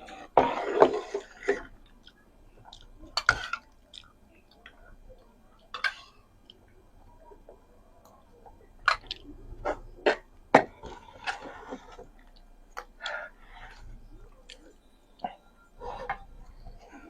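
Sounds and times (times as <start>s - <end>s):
chewing with wet smacks: 1.8s - 5.7s, 13.8s - 15.6s.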